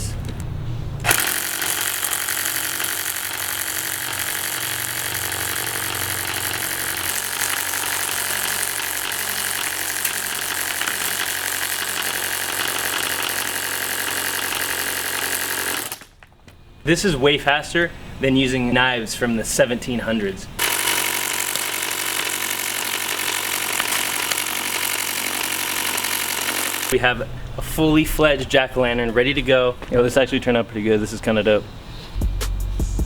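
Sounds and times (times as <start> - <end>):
minigun firing continuous burst: 1.0 - 16.0, 20.6 - 27.0.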